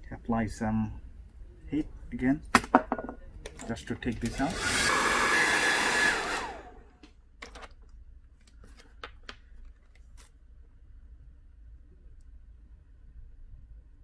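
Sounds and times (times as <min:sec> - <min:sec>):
hair dryer blowing: 0:04.3 - 0:06.9.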